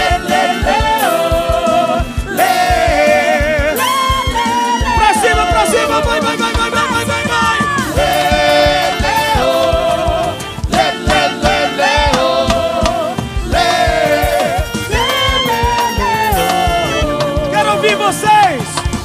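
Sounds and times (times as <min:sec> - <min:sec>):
band playing folk dance music: 0:00.0 - 0:19.0
steady drum beat: 0:00.0 - 0:19.0.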